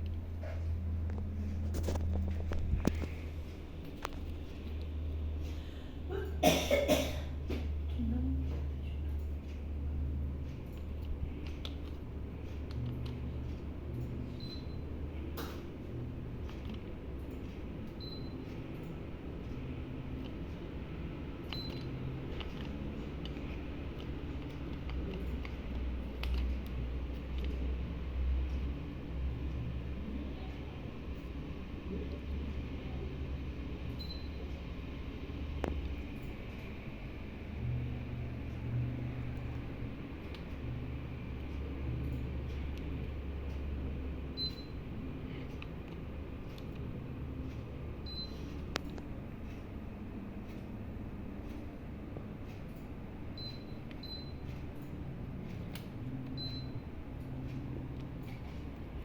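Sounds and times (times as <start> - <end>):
air conditioner humming: 0.0 - 59.0.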